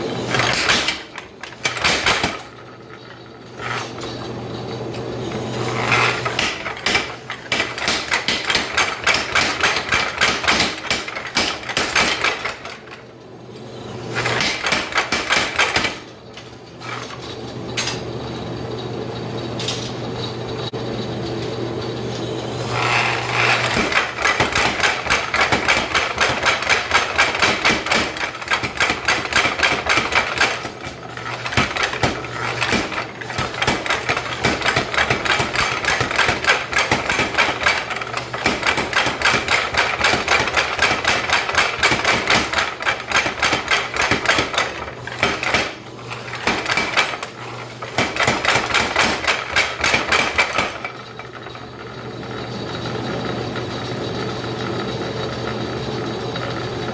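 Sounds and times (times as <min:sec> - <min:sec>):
power hammer striking rapidly: 0:05.8 - 0:12.7, 0:22.7 - 0:50.9
hammer motor humming: 0:18.1 - 0:56.9.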